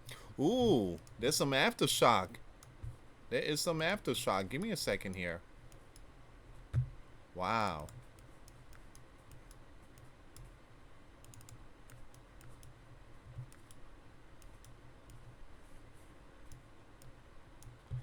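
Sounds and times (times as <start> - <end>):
faint computer clicking: 3.8 - 6.1, 7.6 - 10.6, 11.2 - 15.4, 16.4 - 18.0.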